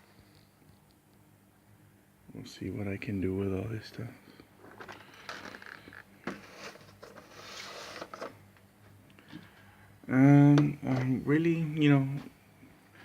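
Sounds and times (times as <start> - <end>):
packaging rustling: 4.6 - 8.4.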